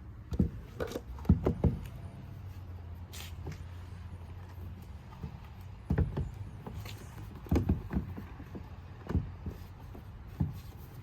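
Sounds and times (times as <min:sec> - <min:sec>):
car mirror knocking against door: 0:00.3 - 0:01.8, 0:07.3 - 0:10.7.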